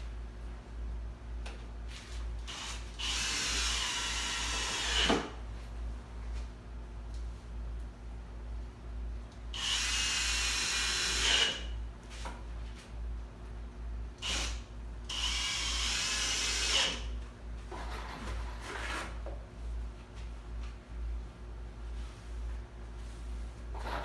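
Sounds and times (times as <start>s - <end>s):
power drill driving screws: 2.5s - 5.3s, 9.6s - 11.7s, 14.2s - 17.1s.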